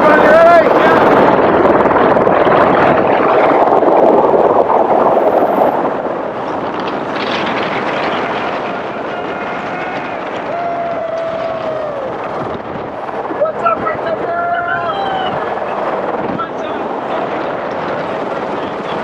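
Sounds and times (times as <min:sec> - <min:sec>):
vehicle rushing noise: 0:00.0 - 0:13.5.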